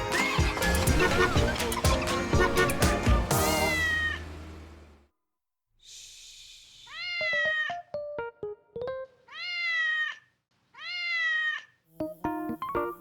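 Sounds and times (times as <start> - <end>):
plucked keyboard notes: 0.0 - 4.7
cat meowing: 3.5 - 4.3, 6.9 - 7.9, 9.3 - 11.8
cat hissing: 5.9 - 7.8.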